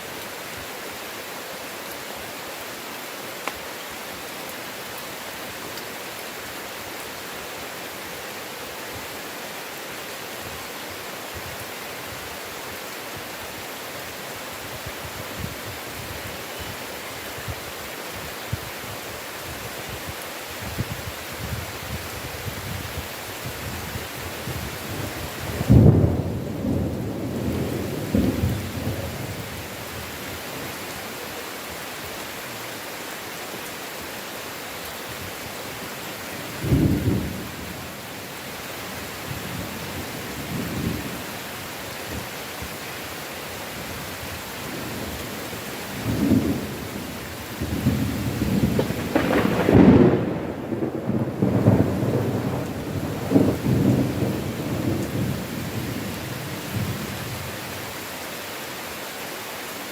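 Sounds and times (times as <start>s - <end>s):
heavy rain in a forest: 0.0s - 59.9s
thunder rolling: 47.6s - 55.3s.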